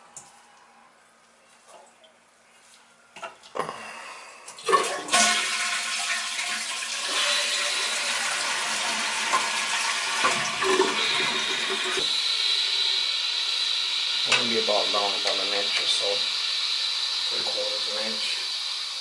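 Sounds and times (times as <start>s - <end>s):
toilet flushing: 4.6s - 19.0s.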